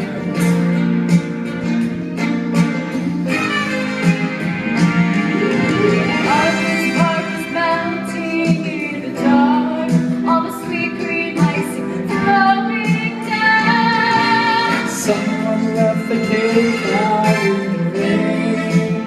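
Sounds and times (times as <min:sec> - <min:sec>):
live band playing: 0:00.0 - 0:19.0
woman singing: 0:06.2 - 0:19.0.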